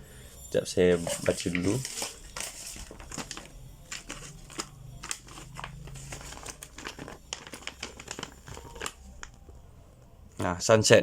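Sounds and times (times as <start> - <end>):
paper crinkling and crackling: 0.9 - 9.7.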